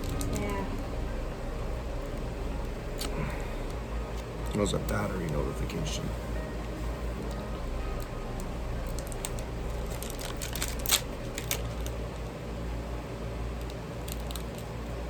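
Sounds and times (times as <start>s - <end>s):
card packs clicking and crinkling: 0.0s - 0.8s, 2.0s - 6.1s, 7.2s - 12.3s, 13.6s - 14.8s
steady low hum: 0.0s - 15.0s.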